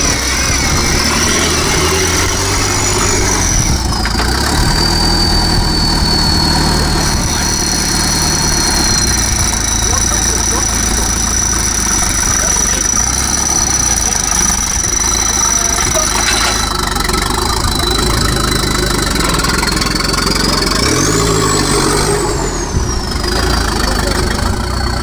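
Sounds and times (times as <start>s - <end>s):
off-road vehicle engine idling: 0.0s - 25.0s.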